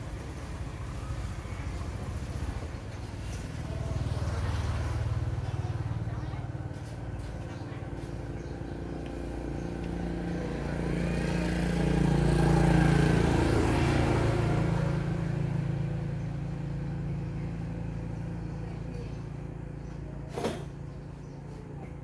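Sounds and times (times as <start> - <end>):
vehicle passing: 0.0 - 18.7.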